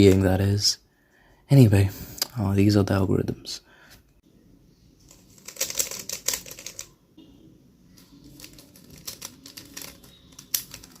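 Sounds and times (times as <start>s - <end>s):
puzzle cube plastic clicks: 8.2s - 11.0s.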